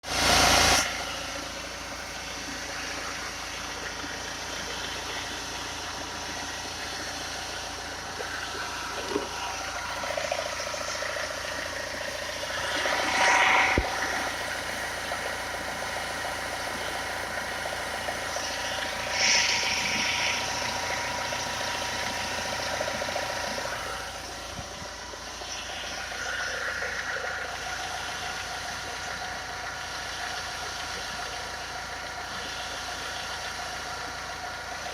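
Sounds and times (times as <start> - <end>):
diesel engine idling: 0.0 - 34.9.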